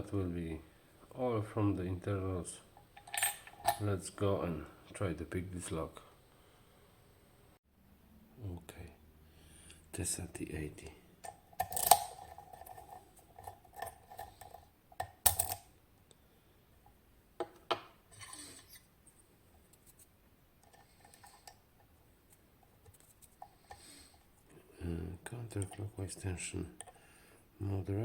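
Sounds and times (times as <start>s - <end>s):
faint small clicks and scrapes: 18.1s - 24.5s.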